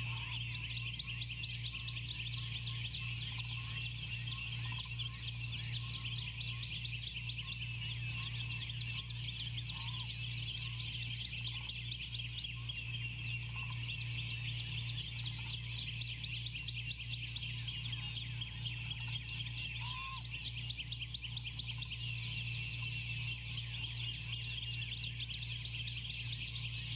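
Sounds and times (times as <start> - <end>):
low electrical hum: 0.0 - 26.9
short lower bird calls: 0.0 - 26.9
small birds chirping: 0.0 - 26.9.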